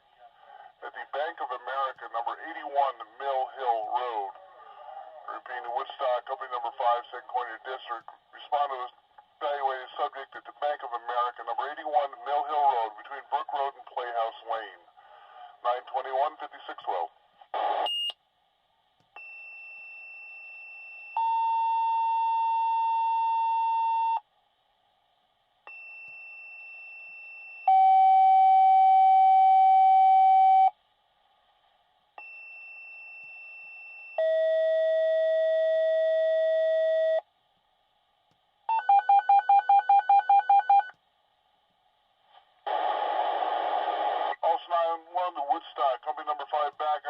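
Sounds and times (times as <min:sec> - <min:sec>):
two-tone radio paging tones: 0:38.7 - 0:41.0.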